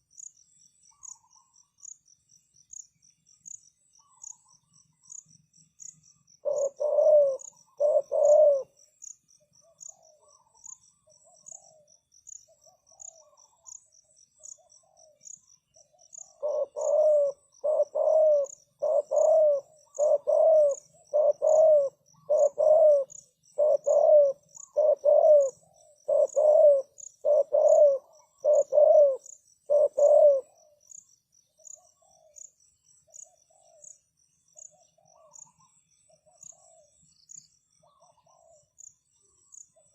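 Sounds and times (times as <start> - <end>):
crickets chirping: 0.0 - 39.9
dove cooing: 6.4 - 8.8, 16.0 - 30.8, 34.7 - 37.0, 37.8 - 38.8.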